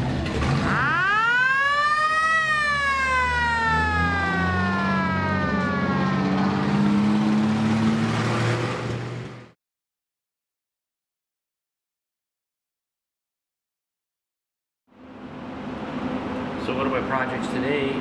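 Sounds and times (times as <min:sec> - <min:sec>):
engine running: 0:00.0 - 0:09.6
fire engine siren winding: 0:00.5 - 0:08.2.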